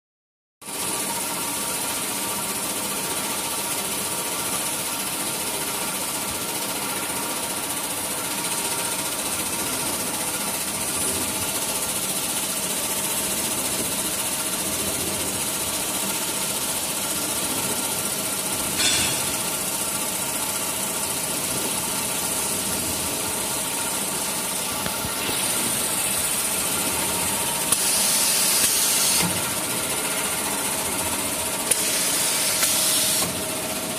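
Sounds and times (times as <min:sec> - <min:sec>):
machine hum: 0:08.8 - 0:33.9.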